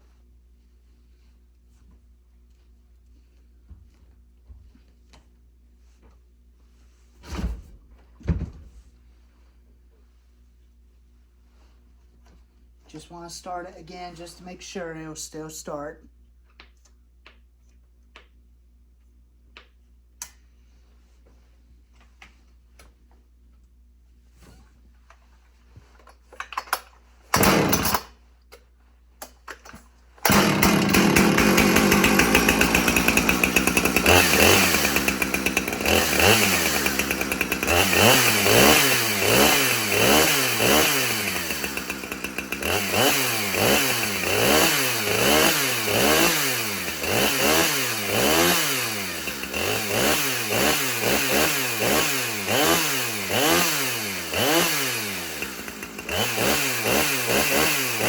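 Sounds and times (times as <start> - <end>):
chainsaw starter pulls: 26.0 - 28.2, 29.2 - 58.0
chainsaw engine running: 27.3 - 28.1, 30.2 - 58.0.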